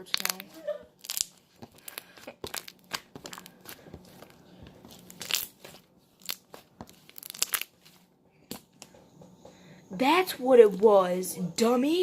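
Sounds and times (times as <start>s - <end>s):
slime clicking and popping: 6.2s - 7.8s.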